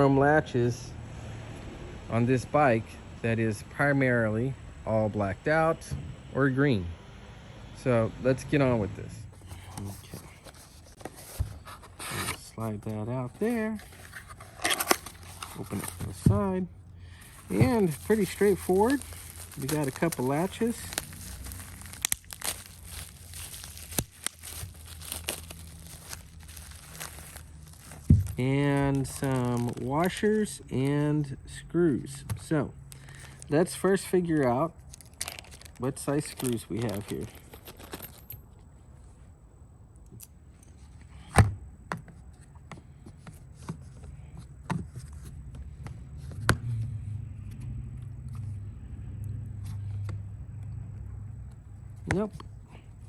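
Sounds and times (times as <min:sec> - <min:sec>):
plastic packaging crinkling: 0:13.5 - 0:16.1, 0:17.3 - 0:30.2, 0:34.9 - 0:38.0.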